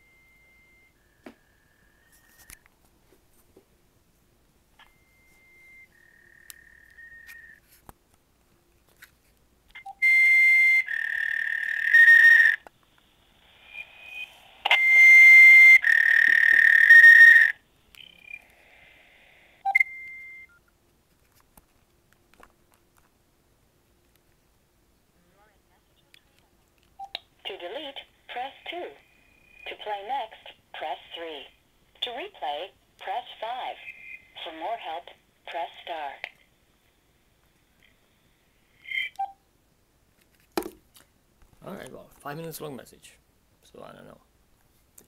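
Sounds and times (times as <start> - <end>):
whistle-like electronic beeps: 0.0 - 2.5, 4.8 - 7.6, 9.8 - 12.6, 13.7 - 18.4, 19.6 - 20.5
hiss: 13.1 - 14.7, 18.5 - 19.6.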